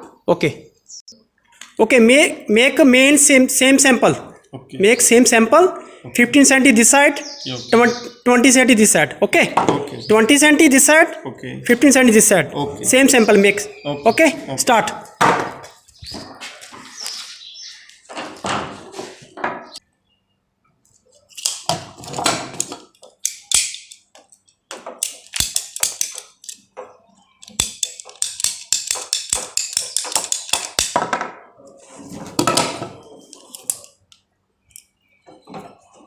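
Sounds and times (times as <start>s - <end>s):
plastic and metal parts clattering: 21.4s - 31.3s.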